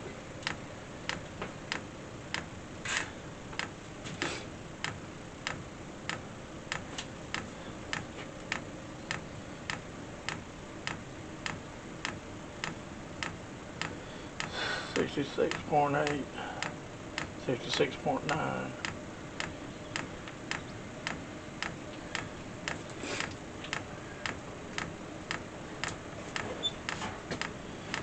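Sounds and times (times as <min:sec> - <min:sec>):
faint steady hum: 0:00.0 - 0:28.0
fuel pump ticking: 0:04.8 - 0:17.4, 0:18.3 - 0:28.0.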